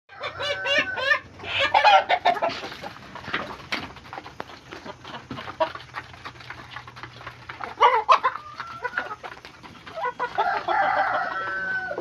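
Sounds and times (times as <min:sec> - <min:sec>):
chickens clucking and squawking: 0:00.1 - 0:12.0.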